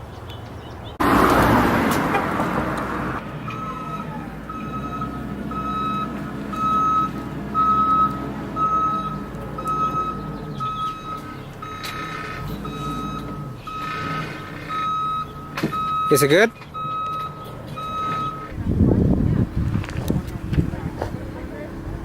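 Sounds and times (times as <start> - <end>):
low engine rumble: 0.0 - 22.0
reversing alarm beeping: 3.4 - 18.6.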